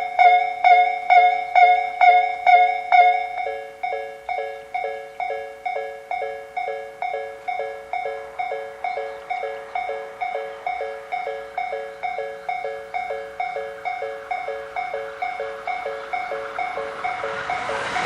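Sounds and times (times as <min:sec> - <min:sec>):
level crossing electronic bell: 0:00.0 - 0:18.0
faint rushing noise: 0:13.1 - 0:18.0.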